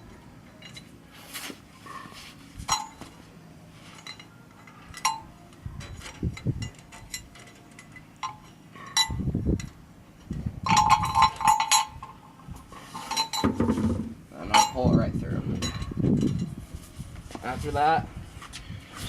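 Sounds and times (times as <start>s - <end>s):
metal clinking and jangling: 0.5s - 0.9s, 2.6s - 3.2s, 3.9s - 9.8s, 10.6s - 13.6s, 15.6s - 16.6s.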